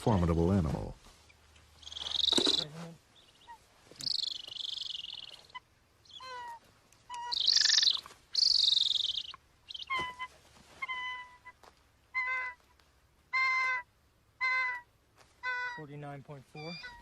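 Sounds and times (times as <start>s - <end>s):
eagle yelping calls: 1.6s - 17.0s
eagle screeching: 1.8s - 11.6s, 13.3s - 17.0s.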